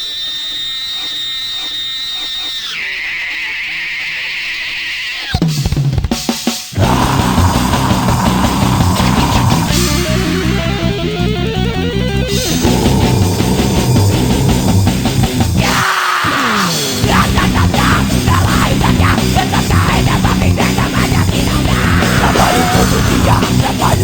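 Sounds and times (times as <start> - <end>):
instrumental metal band: 5.4 - 24.0.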